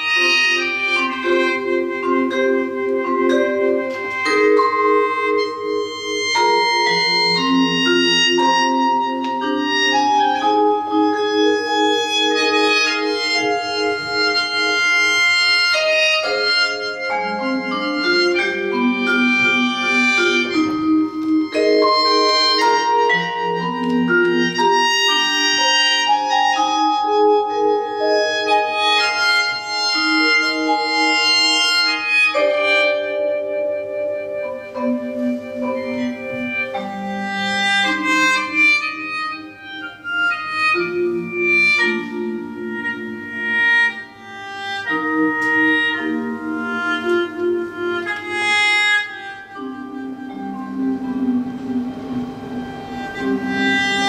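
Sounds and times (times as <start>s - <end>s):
held reed chords: 0.0s - 54.0s
ringing mallet instrument notes: 0.2s - 39.9s.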